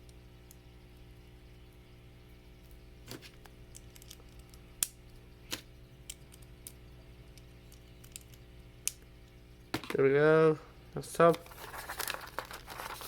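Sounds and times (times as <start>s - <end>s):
plastic pieces clicking together: 7.7s - 9.0s.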